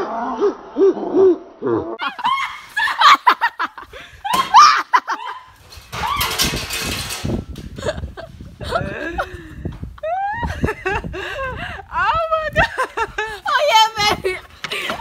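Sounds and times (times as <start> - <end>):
people laughing hard: 2.0 - 5.6, 7.8 - 11.9, 12.6 - 15.0
rustling noise: 5.5 - 8.9.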